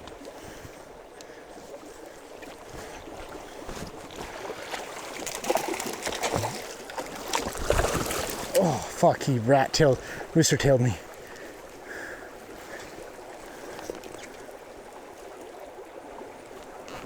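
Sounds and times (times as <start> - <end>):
running river water: 0.0 - 17.0
fish splashing at surface: 4.3 - 8.8.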